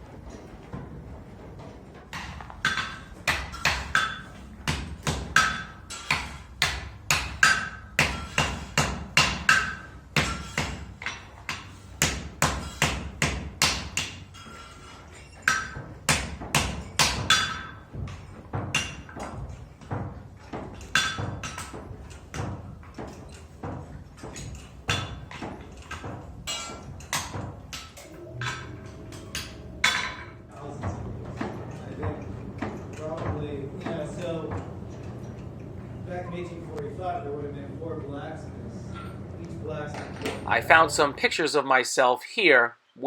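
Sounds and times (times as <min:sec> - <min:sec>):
hammer striking anvil: 0:02.2 - 0:14.2, 0:15.5 - 0:17.8, 0:26.5 - 0:30.4.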